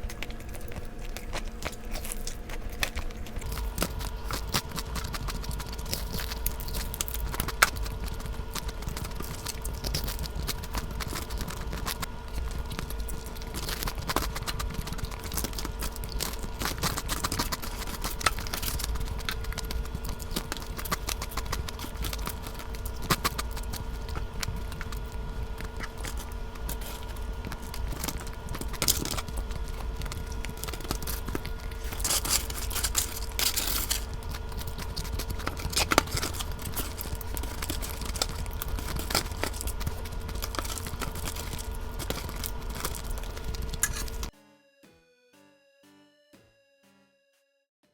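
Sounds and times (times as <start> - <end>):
crunchy chicken being chewed: 0.0 - 44.3
faint steady hum: 0.0 - 44.3.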